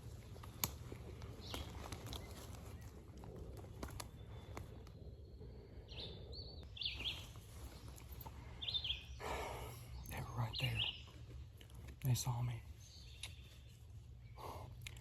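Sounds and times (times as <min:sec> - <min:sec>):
songbird chirping: 0:00.0 - 0:15.0
faint clicks: 0:00.2 - 0:02.6, 0:03.2 - 0:05.0.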